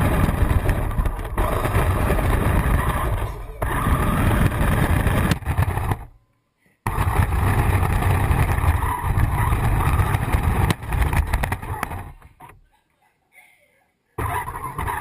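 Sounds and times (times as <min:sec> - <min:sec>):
quick run of knocks: 0:00.0 - 0:06.1, 0:06.9 - 0:12.6
radio-controlled car rumble: 0:00.0 - 0:06.2, 0:06.9 - 0:12.6, 0:14.2 - 0:15.0.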